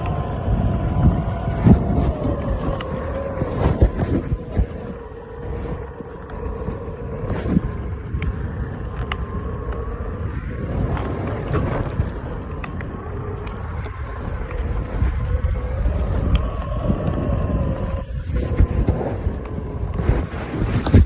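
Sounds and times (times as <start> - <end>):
electric skateboard motor whine: 0.0 - 21.0
rumble of wheels: 0.0 - 21.0
wind on microphone: 0.0 - 21.0.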